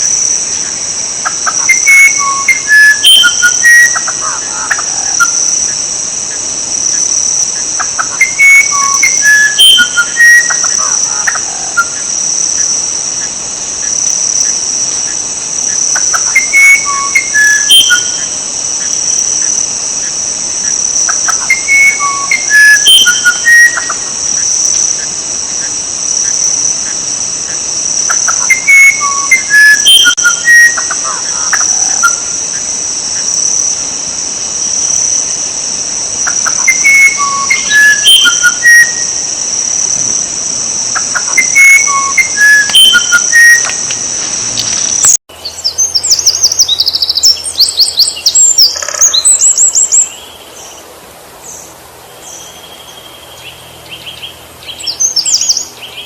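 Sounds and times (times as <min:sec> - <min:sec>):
high-pitched insect trill: 0:00.0 - 0:50.7, 0:51.4 - 0:56.0
songbird whistled song: 0:00.0 - 0:50.8, 0:51.4 - 0:56.0.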